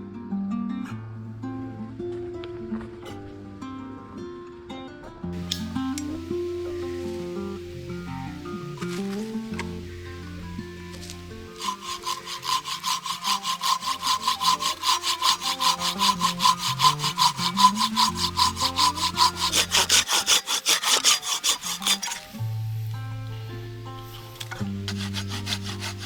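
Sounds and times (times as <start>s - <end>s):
hand saw cutting wood: 5.4s - 22.8s, 24.0s - 26.0s.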